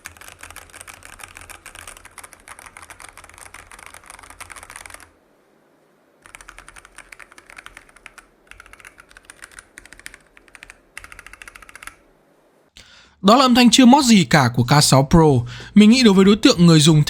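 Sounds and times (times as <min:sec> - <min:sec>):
mechanical keyboard typing: 0:00.0 - 0:05.1, 0:06.2 - 0:12.0.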